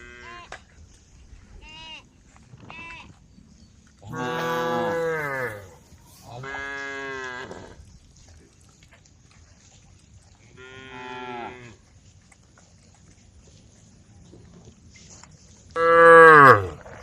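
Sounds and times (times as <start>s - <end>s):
cow mooing: 4.1s - 5.8s, 15.8s - 16.8s.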